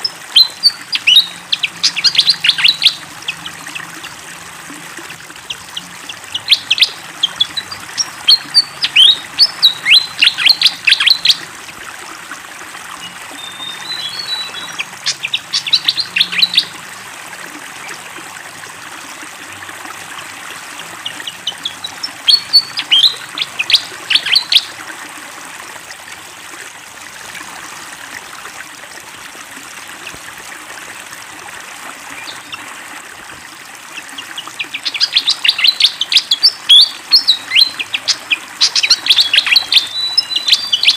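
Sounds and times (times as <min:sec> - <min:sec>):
flowing water: 0:00.0 - 0:40.9
bird chirping: 0:00.4 - 0:03.5, 0:05.5 - 0:11.4, 0:13.0 - 0:16.7, 0:21.0 - 0:24.7, 0:34.6 - 0:40.9.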